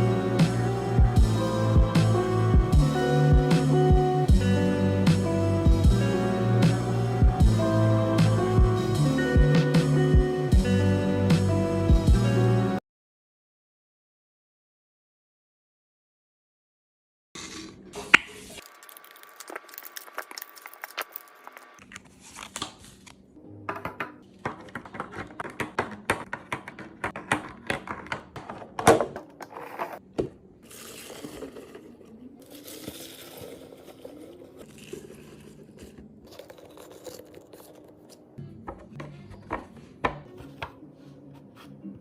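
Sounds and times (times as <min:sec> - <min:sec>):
plastic crinkling and tearing: 0:18.6 - 0:23.1
faint music: 0:23.2 - 0:27.1, 0:31.3 - 0:42.0
items knocking as set down: 0:23.7 - 0:30.4.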